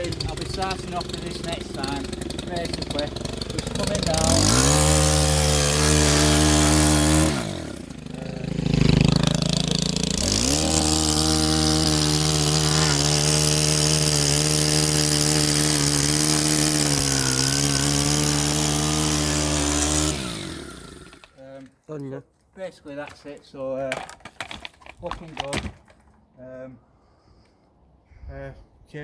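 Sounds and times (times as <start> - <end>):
edge trimmer engine revving: 0.0 - 21.4.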